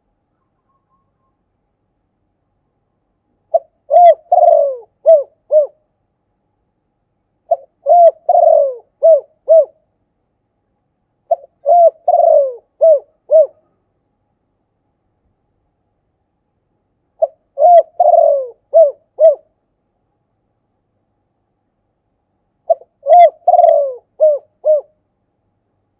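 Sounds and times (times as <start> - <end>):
dove cooing: 3.5 - 5.8, 7.5 - 9.8, 11.3 - 13.7, 17.2 - 19.5, 22.7 - 25.0.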